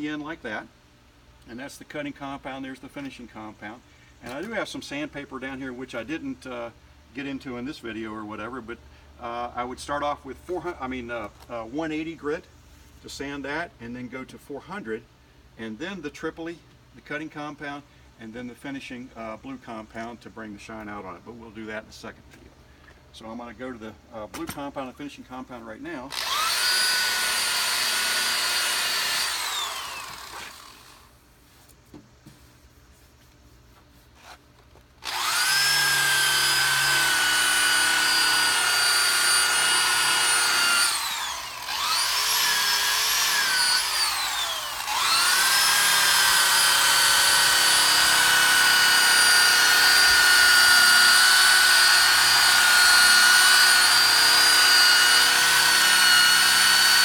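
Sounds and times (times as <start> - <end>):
buffing wheel motor whine: 26.1 - 31.0, 35.0 - 57.0.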